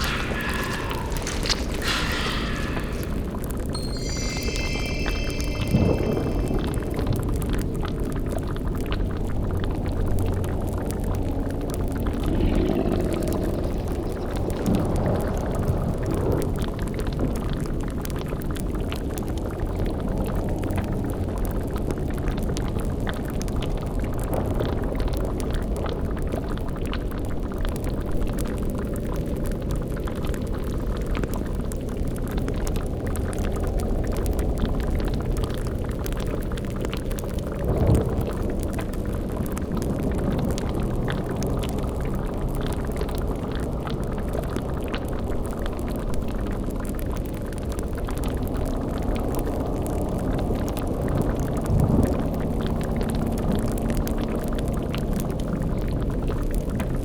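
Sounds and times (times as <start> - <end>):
bubbling cauldron: 0.0 - 7.3, 9.8 - 16.4, 33.2 - 56.8
crackling fire: 0.0 - 7.9, 8.6 - 57.0.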